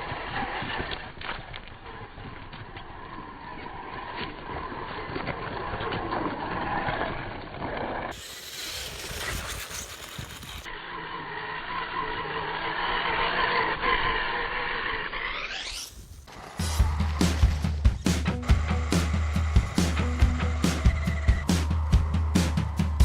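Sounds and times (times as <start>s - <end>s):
toy car motor whining: 8.1s - 21.5s.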